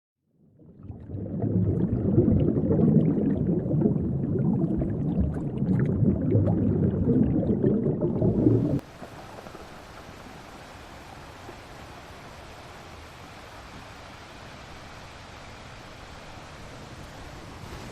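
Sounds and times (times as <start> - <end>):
deep rumbling underwater groan: 0.7 - 8.8
steady hiss: 8.8 - 17.9.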